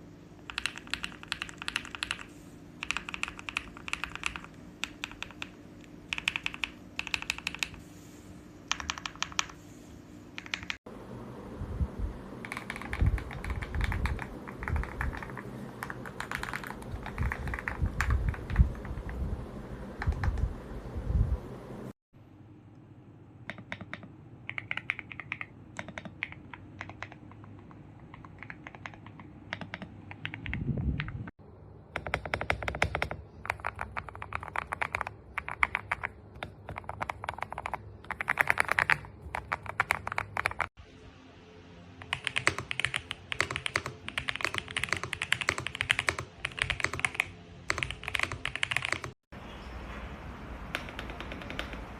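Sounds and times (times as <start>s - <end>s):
mechanical keyboard typing: 0.5s - 7.8s, 8.7s - 9.6s, 10.4s - 10.8s, 12.4s - 19.2s, 20.0s - 20.5s, 23.5s - 31.2s, 31.9s - 40.7s, 42.0s - 49.2s, 50.7s - 51.9s.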